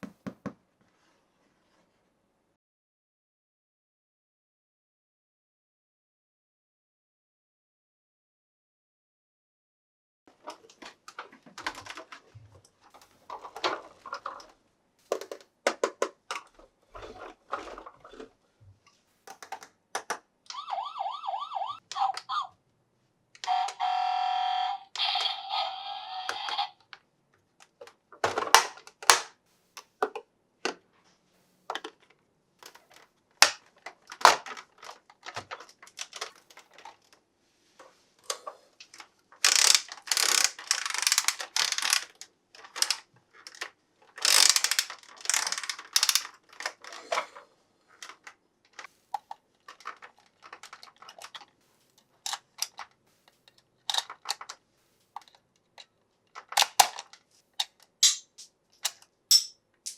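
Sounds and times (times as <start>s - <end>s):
plastic handling clicks and rustles: 10.3s - 20.2s, 26.8s - 31.0s, 31.7s - 59.9s
toy electronic siren: 20.5s - 22.5s, 23.4s - 26.8s.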